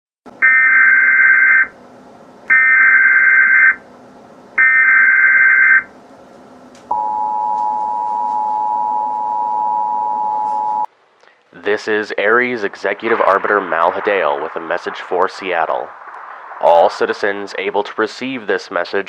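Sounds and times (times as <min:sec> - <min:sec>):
two-tone attention signal: 0:06.9 - 0:10.9
low hiss: 0:10.9 - 0:19.0
warbling data tones: 0:12.3 - 0:17.8.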